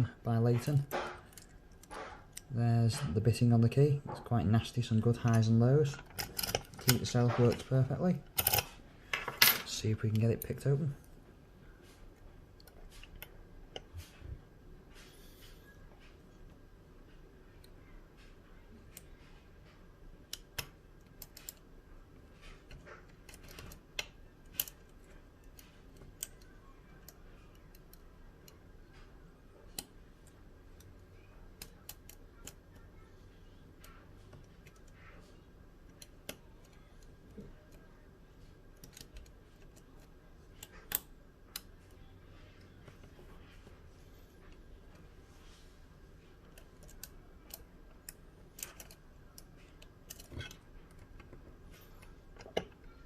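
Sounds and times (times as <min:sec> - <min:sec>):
lock picking clicks: 0:08.3 - 0:08.7.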